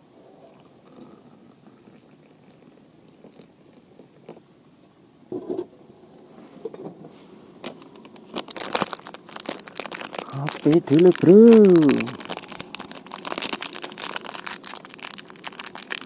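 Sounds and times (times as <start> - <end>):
water bubbling in a pot: 0.0 - 3.9.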